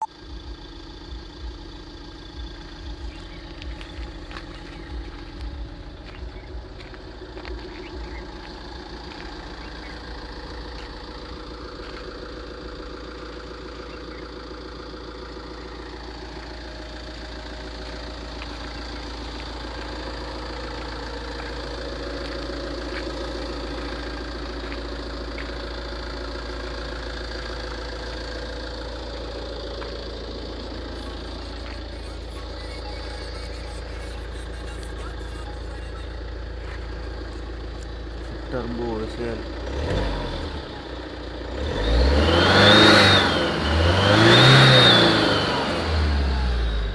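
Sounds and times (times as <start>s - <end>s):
diesel engine running: 0.0s - 46.9s.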